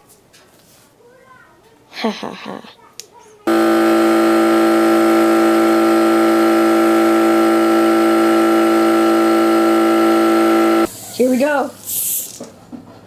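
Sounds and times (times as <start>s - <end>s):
air compressor running: 3.5s - 10.9s.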